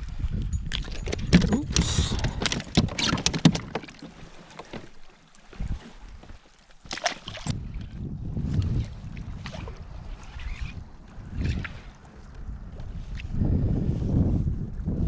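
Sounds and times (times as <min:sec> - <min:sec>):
clicks and knocks in a kayak: 0:00.2 - 0:10.8.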